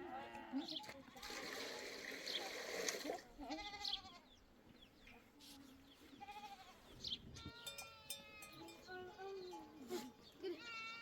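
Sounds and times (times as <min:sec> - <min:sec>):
livestock bleating: 0:00.0 - 0:01.3, 0:03.4 - 0:04.3, 0:06.2 - 0:06.8, 0:10.4 - 0:11.0.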